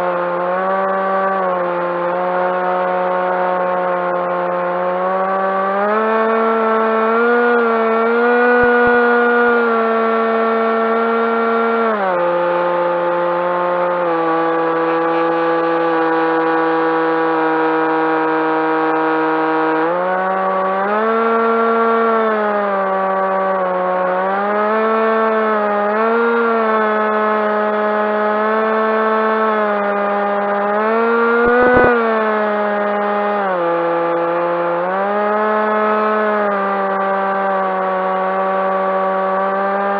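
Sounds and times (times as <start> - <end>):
model plane motor whining: 6.1 - 11.0, 31.1 - 32.4.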